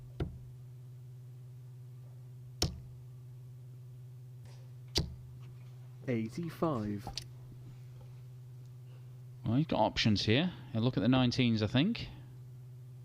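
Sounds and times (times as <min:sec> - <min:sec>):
darts striking dartboard: 0:00.0 - 0:00.4, 0:02.6 - 0:02.9, 0:04.9 - 0:05.2
steady low hum: 0:00.0 - 0:13.0.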